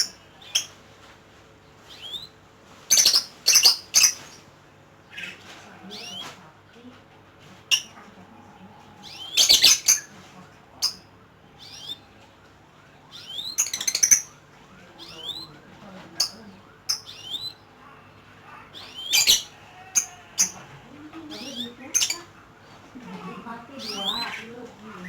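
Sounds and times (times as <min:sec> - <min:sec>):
lovebird chattering: 0:00.0 - 0:00.8, 0:01.9 - 0:02.3, 0:02.9 - 0:04.4, 0:05.1 - 0:06.3, 0:07.7 - 0:08.0, 0:08.9 - 0:10.2, 0:10.8 - 0:12.2, 0:13.1 - 0:14.4, 0:15.0 - 0:25.0.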